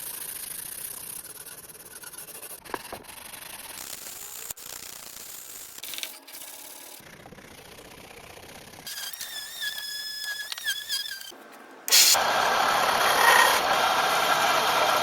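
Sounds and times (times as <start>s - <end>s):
high wavering squeal: 8.9s - 12.2s.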